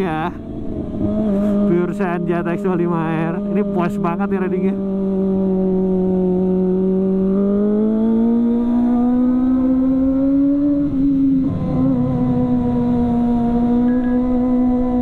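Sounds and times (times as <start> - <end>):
motorcycle engine: 0.0 - 15.0.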